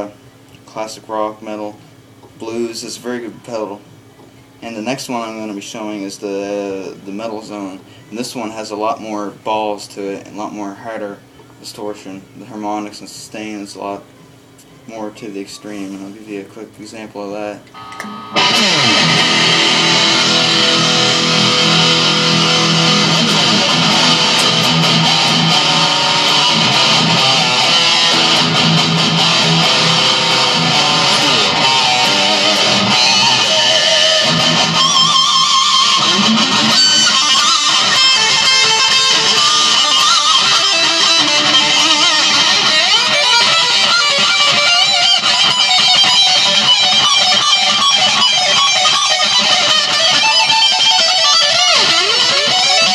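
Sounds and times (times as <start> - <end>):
distorted electric guitar riffs: 17.6 - 52.9.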